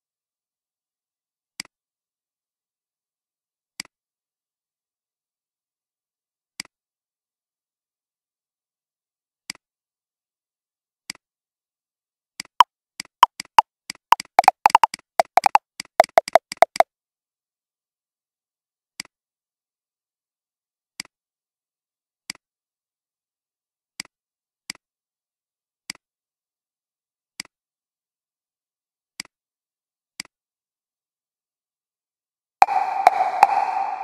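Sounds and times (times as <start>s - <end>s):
computer mouse clicking: 14.4s - 16.8s.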